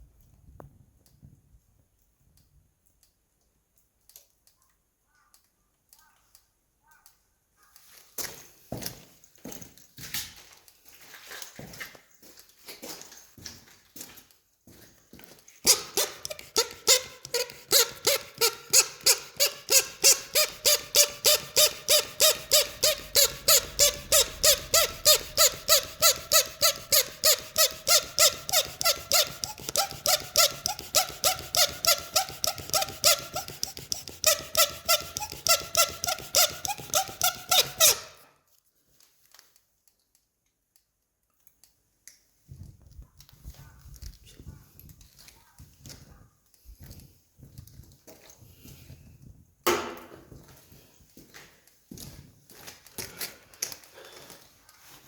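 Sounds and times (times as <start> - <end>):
rapid regular squeaking: 15.6 - 38.2.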